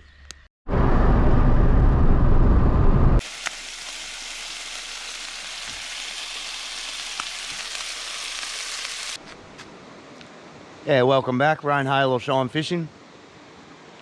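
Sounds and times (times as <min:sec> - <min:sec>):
loud low rumble: 0:00.7 - 0:03.2
food frying in a pan: 0:03.2 - 0:09.2.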